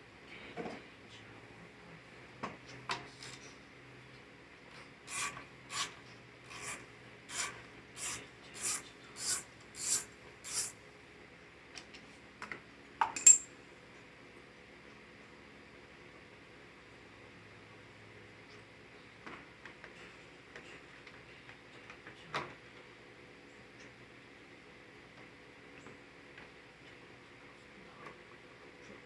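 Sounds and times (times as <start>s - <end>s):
file rasping on metal: 5.1s - 10.8s
sharp metallic clink: 13.2s - 13.5s.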